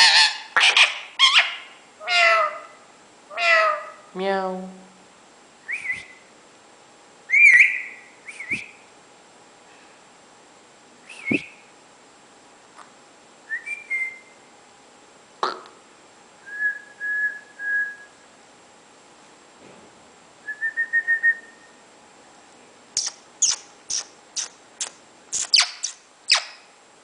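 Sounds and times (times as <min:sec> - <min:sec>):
parakeet whistling: 0:00.0 - 0:01.6, 0:07.3 - 0:08.8, 0:23.0 - 0:24.5, 0:25.4 - 0:26.6.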